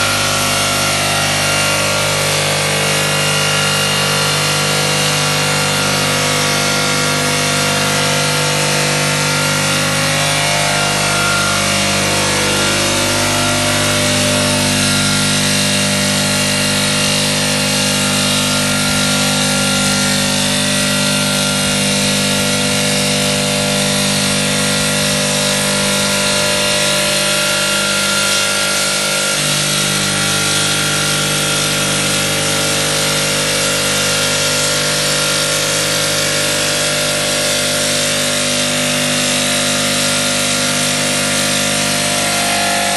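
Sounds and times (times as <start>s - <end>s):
machine humming: 0.0s - 42.9s.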